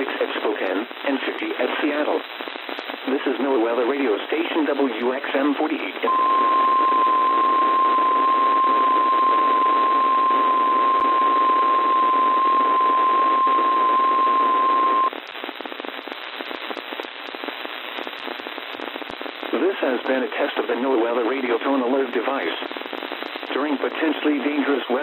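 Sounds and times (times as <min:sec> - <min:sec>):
crackling radio static: 0:00.0 - 0:25.0
steady alarm tone: 0:06.1 - 0:15.1.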